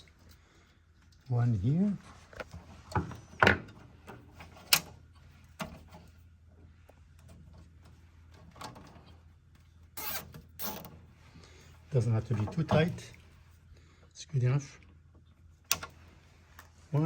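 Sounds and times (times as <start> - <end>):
cable tie zipping tight: 10.0 - 10.9.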